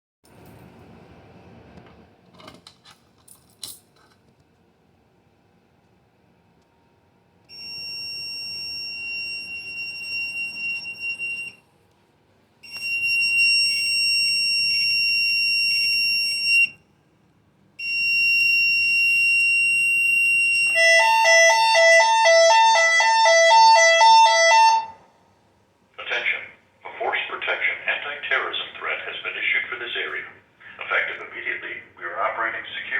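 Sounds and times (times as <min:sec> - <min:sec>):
alarm sounder high-pitched tone: 0:07.5 - 0:11.6, 0:12.6 - 0:16.8, 0:17.8 - 0:25.0
two-tone alternating alarm: 0:07.5 - 0:11.6, 0:12.6 - 0:16.8, 0:17.8 - 0:25.0.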